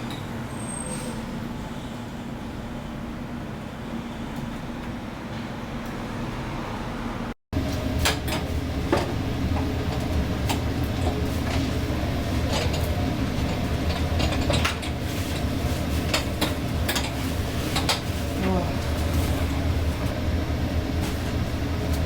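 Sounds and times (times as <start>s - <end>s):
machine hum: 7.6s - 22.0s.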